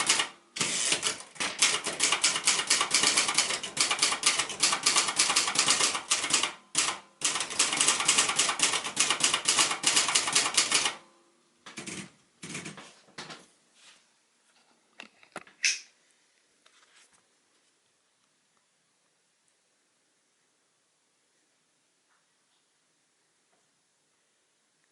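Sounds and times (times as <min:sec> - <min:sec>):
typewriter mechanical clicks: 0:00.0 - 0:11.0, 0:11.7 - 0:12.8
typewriter typing clatter: 0:00.0 - 0:11.0, 0:11.7 - 0:12.9.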